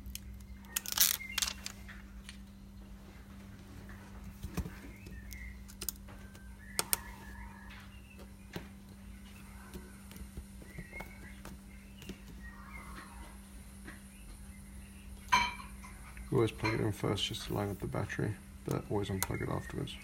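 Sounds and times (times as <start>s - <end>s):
steady low hum: 0.0s - 20.0s
bird chirps: 0.5s - 1.9s, 4.6s - 16.0s, 18.9s - 20.0s.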